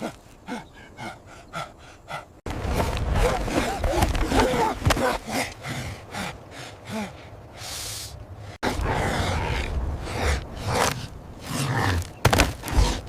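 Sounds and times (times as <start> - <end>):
person gasping breathily: 0.0 - 2.4, 3.1 - 9.2.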